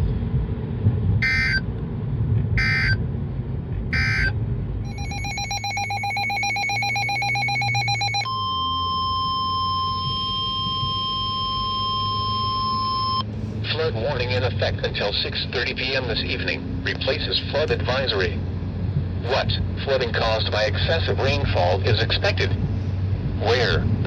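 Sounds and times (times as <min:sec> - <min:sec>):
pulsing electronic beep: 0:01.2 - 0:01.6, 0:02.6 - 0:03.0, 0:04.0 - 0:04.3, 0:04.9 - 0:13.2
steady alarm tone: 0:01.2 - 0:01.6, 0:02.6 - 0:03.0, 0:03.9 - 0:04.3, 0:04.9 - 0:13.2
screechy digital data bursts: 0:04.9 - 0:08.3.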